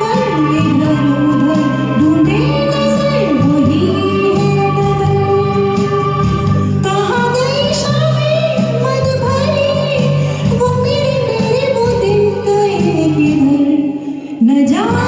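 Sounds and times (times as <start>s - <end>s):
karaoke backing track: 0.0s - 15.0s
woman singing: 0.0s - 15.0s.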